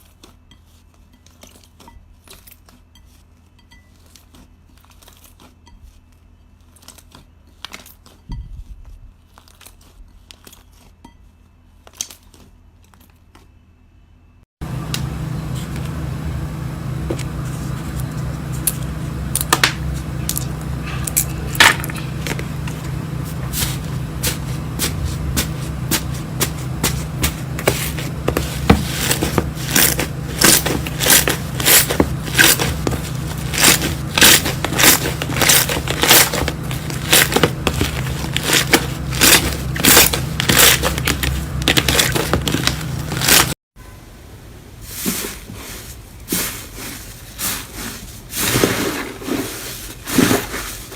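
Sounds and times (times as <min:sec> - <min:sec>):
steady low hum: 0:13.6 - 0:44.8.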